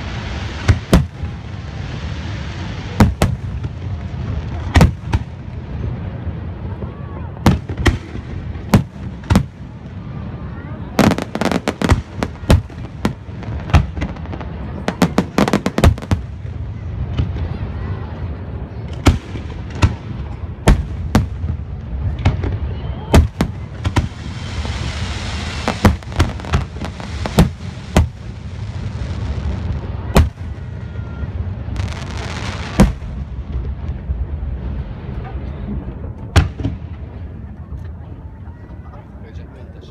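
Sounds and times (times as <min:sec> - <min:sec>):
fireworks hissing: 0:00.0 - 0:06.4, 0:19.0 - 0:33.9
fireworks booming: 0:00.0 - 0:37.6
low rumble: 0:33.0 - 0:38.6.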